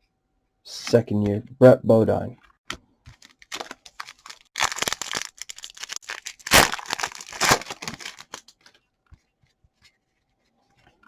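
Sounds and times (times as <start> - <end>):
wrapper tearing and crinkling: 3.2 - 8.6.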